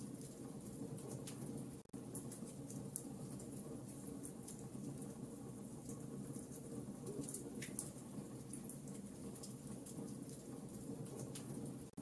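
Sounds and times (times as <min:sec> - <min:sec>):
wood fire crackling: 0:00.0 - 0:12.0.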